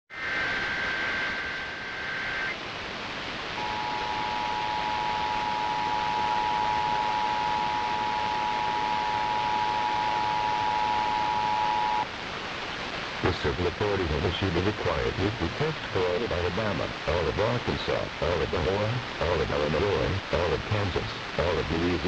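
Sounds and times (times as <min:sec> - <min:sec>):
buzzing data burst: 0:00.1 - 0:02.6, 0:03.6 - 0:12.1
radio hiss: 0:00.1 - 0:22.0
two-tone attention signal: 0:03.6 - 0:12.0.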